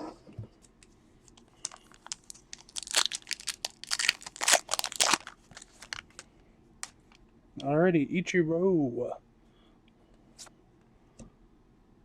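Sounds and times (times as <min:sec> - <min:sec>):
plastic packaging crinkling: 0:01.4 - 0:07.0.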